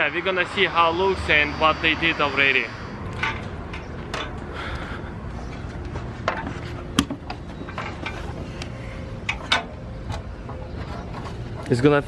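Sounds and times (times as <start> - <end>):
sharp knocks and clicks: 5.6 - 8.4.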